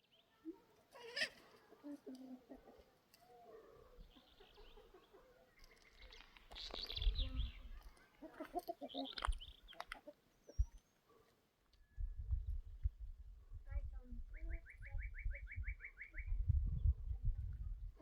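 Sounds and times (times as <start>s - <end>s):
birds chirping and calling: 0.0s - 11.2s, 14.3s - 16.5s.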